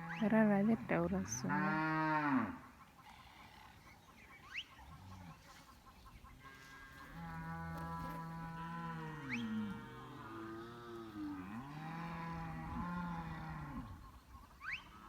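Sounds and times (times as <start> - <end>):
cattle mooing: 0.0 - 2.6, 6.4 - 14.0
bird chirps: 2.7 - 6.6, 13.9 - 15.0.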